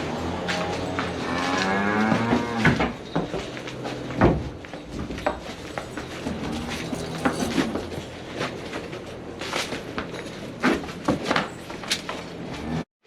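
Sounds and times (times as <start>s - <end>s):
steady low hum: 4.8s - 8.6s.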